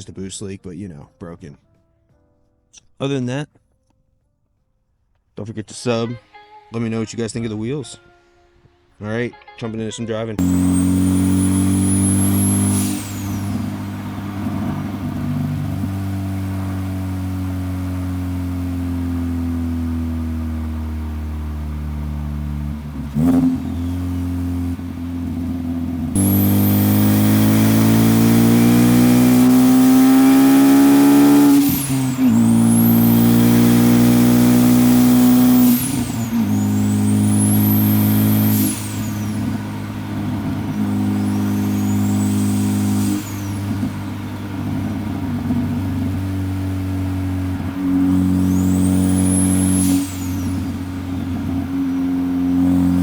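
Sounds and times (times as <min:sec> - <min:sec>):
turbo whistle: 0:10.4 - 0:17.0, 0:26.2 - 0:44.6, 0:47.7 - 0:52.1
car engine accelerating: 0:10.4 - 0:53.0.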